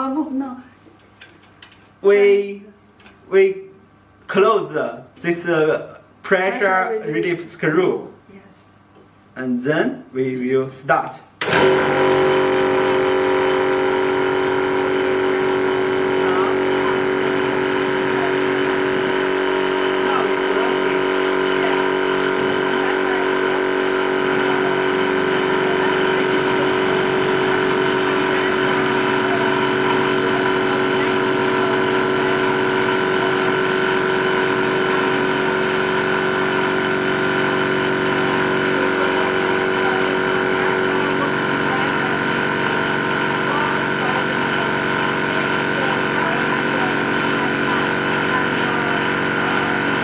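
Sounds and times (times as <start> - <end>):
air compressor humming and whining: 11.4 - 50.0.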